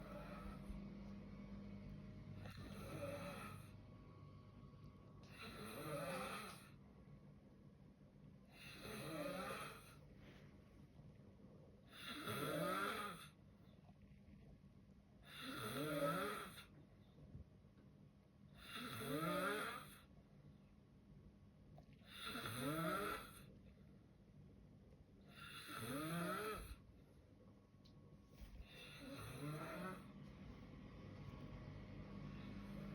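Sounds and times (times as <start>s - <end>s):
man snoring: 2.4s - 3.7s, 5.3s - 6.7s, 8.5s - 10.0s, 11.9s - 13.3s, 15.2s - 16.7s, 18.6s - 20.1s, 22.1s - 23.5s, 25.3s - 26.8s, 28.6s - 30.1s.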